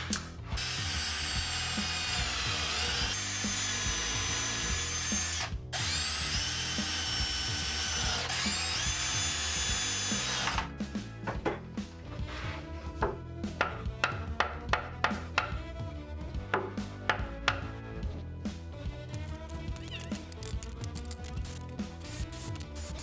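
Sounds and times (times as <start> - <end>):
power drill whining: 0.0 - 10.7, 19.1 - 23.0.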